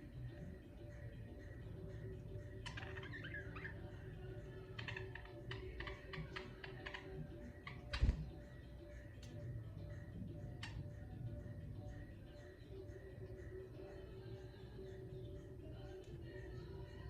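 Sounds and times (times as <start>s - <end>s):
budgerigars chirping: 2.4s - 8.3s.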